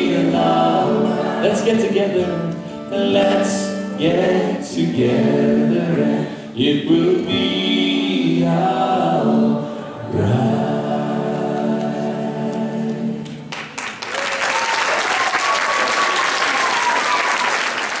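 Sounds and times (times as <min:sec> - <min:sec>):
group of voices singing: 0:00.0 - 0:13.5
audience applause: 0:13.3 - 0:18.0.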